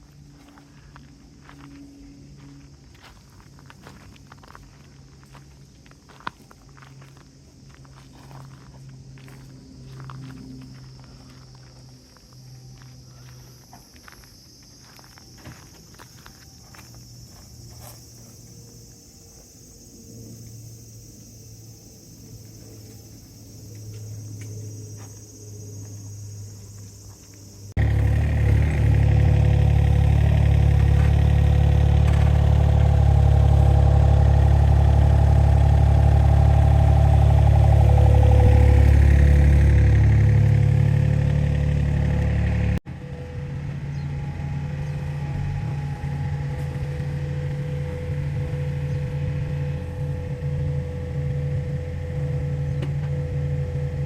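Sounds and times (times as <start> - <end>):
diesel engine droning: 22.4 - 54.0.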